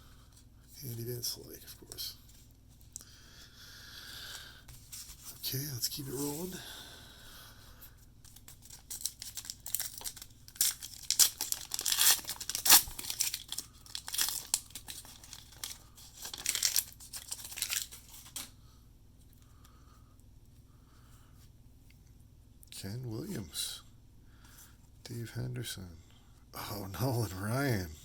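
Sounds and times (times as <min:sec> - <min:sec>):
wrapper tearing and crinkling: 0:08.6 - 0:18.5.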